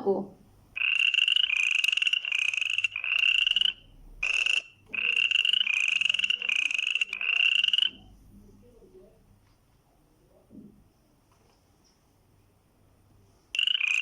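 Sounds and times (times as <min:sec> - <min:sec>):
frog croaking: 0:00.8 - 0:08.1, 0:13.6 - 0:14.0.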